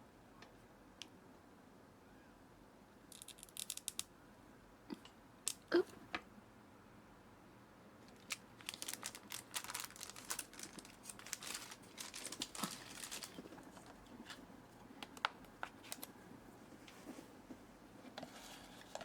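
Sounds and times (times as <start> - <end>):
crinkly packaging wrapper: 8.0 - 16.2.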